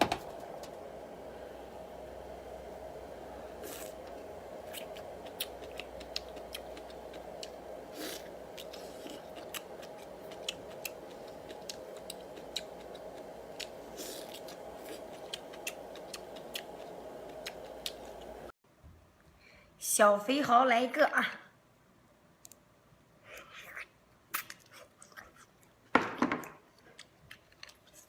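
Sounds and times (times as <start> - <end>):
steady background hum: 0.0 - 28.0
person chewing and eating: 3.6 - 18.5, 23.3 - 28.0.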